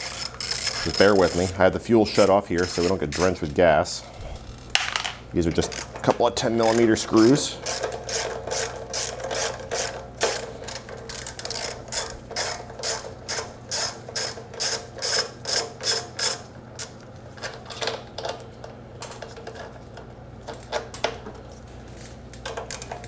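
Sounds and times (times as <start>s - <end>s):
ratchet wrench clicking: 0.0s - 1.6s, 2.2s - 3.5s, 5.6s - 16.9s
tool handling sounds: 0.0s - 23.0s.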